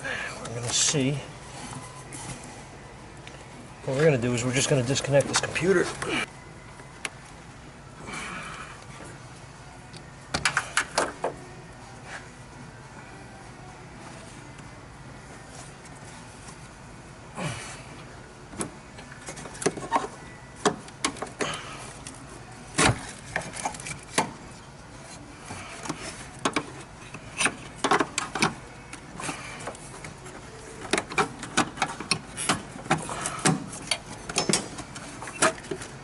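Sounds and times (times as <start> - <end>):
hand tools clicking and knocking: 30.9 - 34.8.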